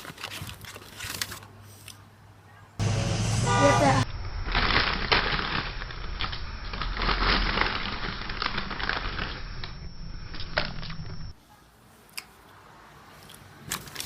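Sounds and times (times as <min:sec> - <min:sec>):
crunching and crackling: 0:00.0 - 0:01.6, 0:04.1 - 0:11.4.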